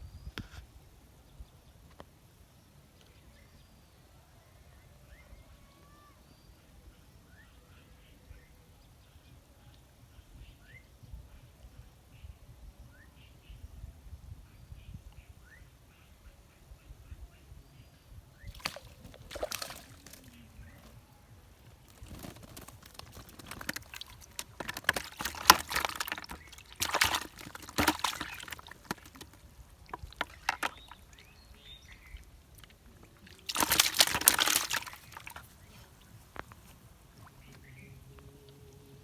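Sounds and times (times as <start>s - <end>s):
water splashing and sloshing: 18.5s - 39.0s.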